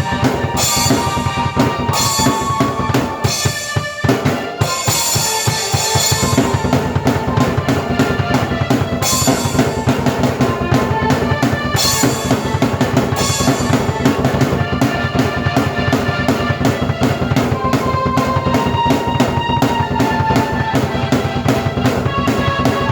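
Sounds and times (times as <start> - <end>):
cymbal crashes: 0.0 - 7.9, 8.6 - 14.9
fast drum kit: 0.0 - 22.9
sustained keyboard chords: 0.0 - 22.9.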